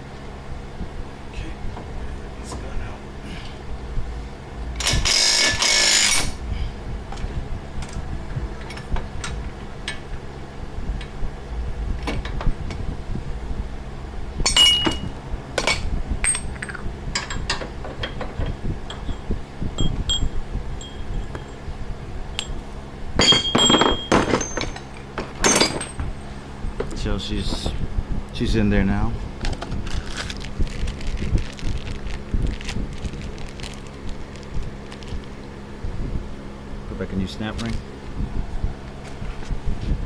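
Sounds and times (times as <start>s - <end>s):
shop fan humming: 0.0s - 40.0s
metal tools clinking and clanking: 14.5s - 21.7s, 22.4s - 27.6s.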